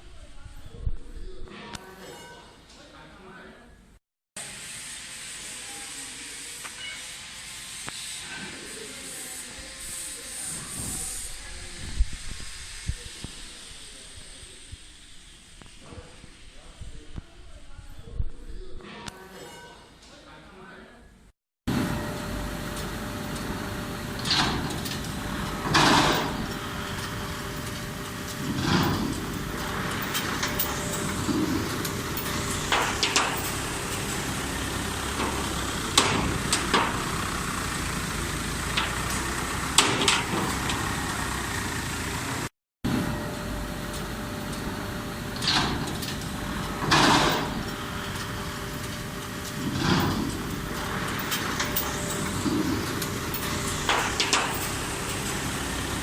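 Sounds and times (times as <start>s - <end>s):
round baler humming: 21.7s - 56.0s.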